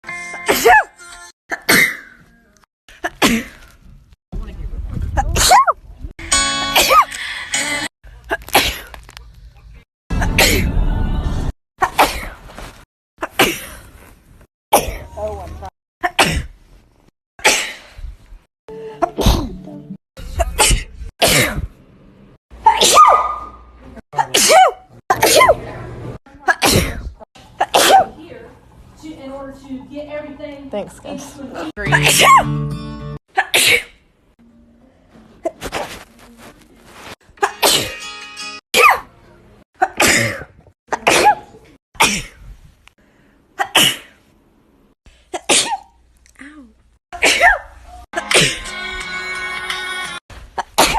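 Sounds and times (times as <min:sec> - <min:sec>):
person sneezing: 0:19.0 - 0:19.6, 0:24.2 - 0:25.6, 0:26.5 - 0:28.1, 0:31.9 - 0:32.4, 0:33.4 - 0:34.0, 0:37.4 - 0:38.0, 0:39.8 - 0:42.4, 0:45.3 - 0:48.7, 0:50.6 - 0:50.9.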